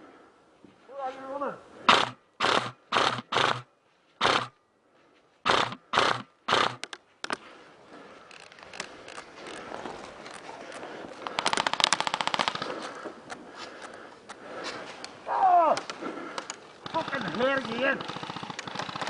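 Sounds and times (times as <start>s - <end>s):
rustling through undergrowth: 0.6s - 19.0s
airsoft gun shots: 1.9s - 4.5s, 5.4s - 6.8s, 11.4s - 12.8s.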